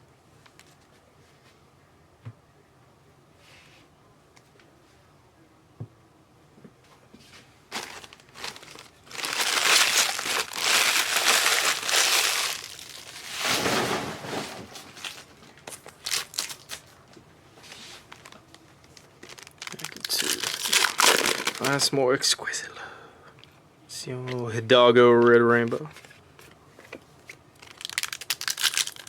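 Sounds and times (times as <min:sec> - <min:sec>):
wrappers crinkling: 0:07.7 - 0:17.0, 0:17.7 - 0:21.9, 0:27.3 - 0:29.0.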